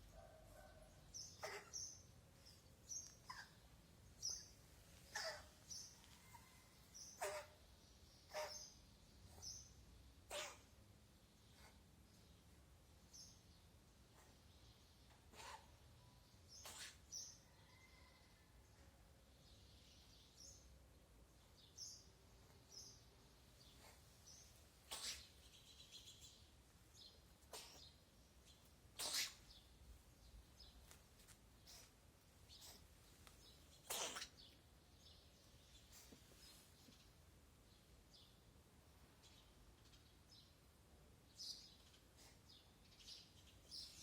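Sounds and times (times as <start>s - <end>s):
small birds chirping: 0.0s - 44.0s
cat coughing: 1.4s - 1.9s, 7.2s - 7.6s.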